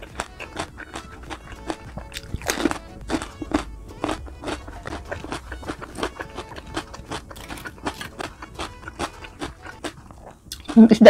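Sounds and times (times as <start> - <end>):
chewing crispy fried food: 0.0 - 11.0.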